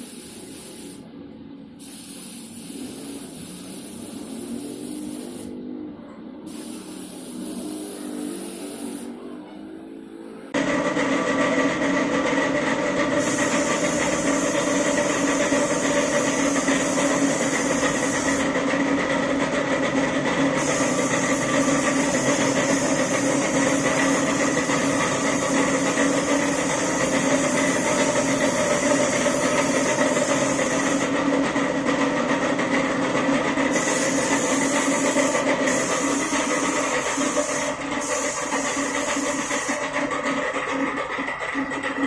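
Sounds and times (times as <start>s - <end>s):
high air hiss: 0.0s - 1.1s, 1.8s - 5.6s, 6.5s - 9.2s, 33.7s - 39.8s
motor running steadily: 10.6s - 31.4s.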